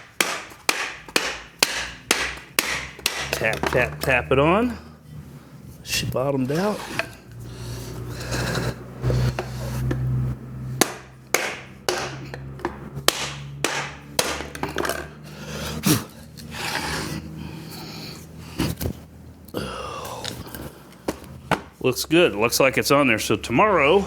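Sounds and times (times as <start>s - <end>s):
hammer tapping on plastic pipe: 0.0s - 4.1s.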